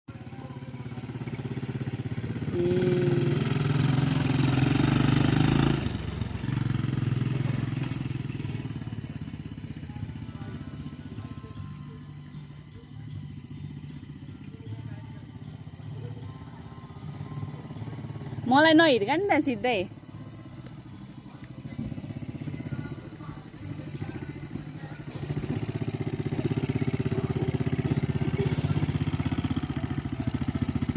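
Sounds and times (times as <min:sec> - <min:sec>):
atv engine running: 0:00.1 - 0:30.9.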